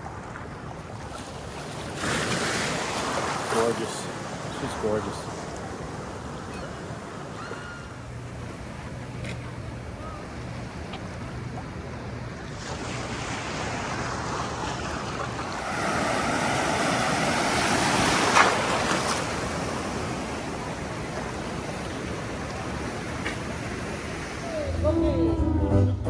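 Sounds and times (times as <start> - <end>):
ocean surf washing: 0.0 - 25.7
sharp water splash: 12.6 - 20.0.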